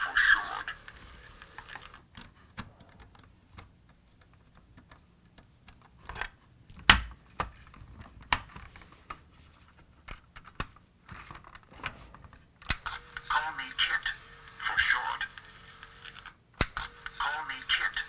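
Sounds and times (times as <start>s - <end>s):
hard plastic clicks and taps: 2.1s - 9.2s.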